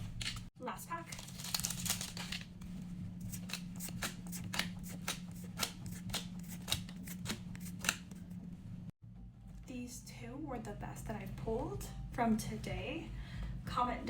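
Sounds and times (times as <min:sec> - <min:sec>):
steady low hum: 0:00.0 - 0:14.0
trading cards sliding by hand: 0:03.2 - 0:08.4.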